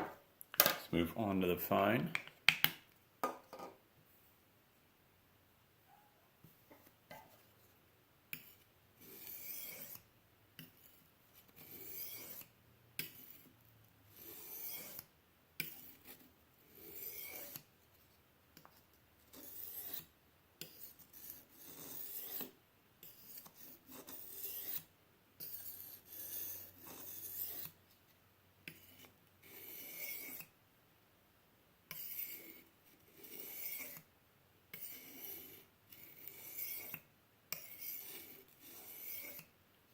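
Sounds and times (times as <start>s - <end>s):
knife scraping sharpening stone: 8.3s - 13.5s, 14.1s - 17.7s, 19.3s - 27.8s, 28.7s - 30.6s, 31.9s - 34.1s, 34.7s - 39.6s.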